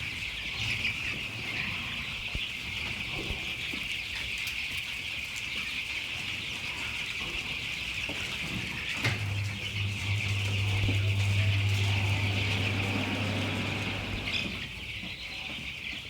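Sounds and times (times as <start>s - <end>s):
chickens clucking: 0.1s - 16.0s
low steady hum: 9.0s - 14.7s.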